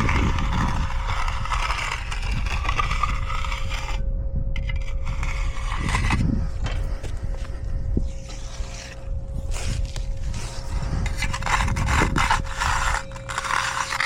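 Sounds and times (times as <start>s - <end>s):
tools scraping wet concrete: 0.0s - 4.0s, 4.6s - 14.0s
steady low rumble: 0.0s - 14.0s.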